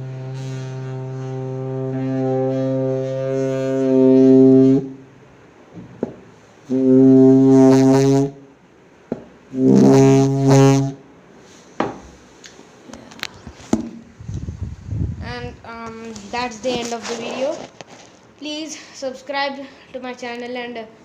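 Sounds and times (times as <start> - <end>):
stick whooshing with low hum: 13.5 - 17.8.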